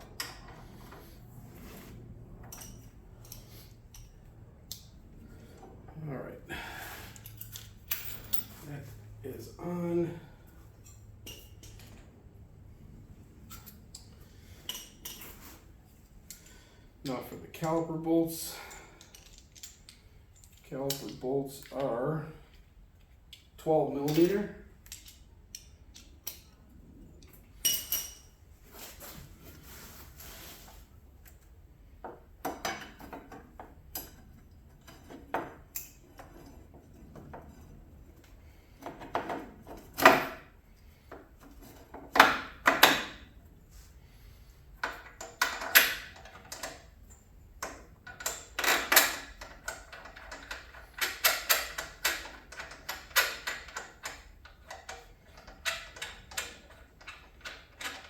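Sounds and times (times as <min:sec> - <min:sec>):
hand tools clinking on metal: 0:24.0 - 0:26.4.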